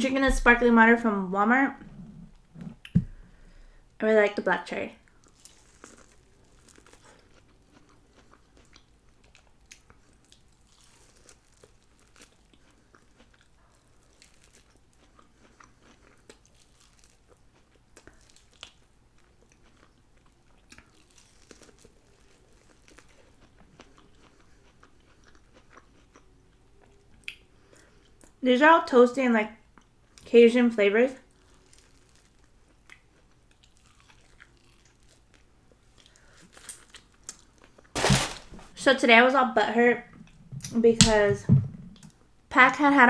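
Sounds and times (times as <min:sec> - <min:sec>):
chewing crispy food: 0:05.0 - 0:28.4, 0:31.2 - 0:38.4.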